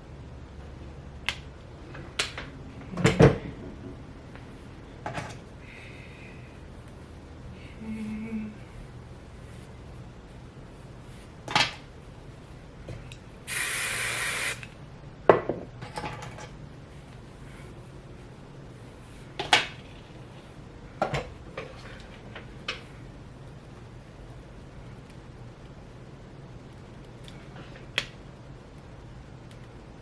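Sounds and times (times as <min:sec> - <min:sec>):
spray hissing: 0:13.5 - 0:14.7.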